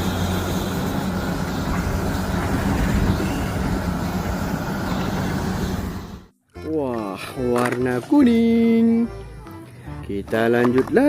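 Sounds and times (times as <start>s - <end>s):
water spray hissing: 0.0s - 6.2s
pressure washer motor hum: 0.0s - 6.3s.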